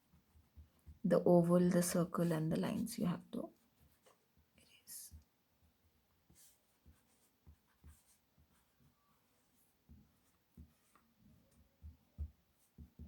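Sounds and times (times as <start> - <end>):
soft bumps on drawing surface: 3.5 - 13.0.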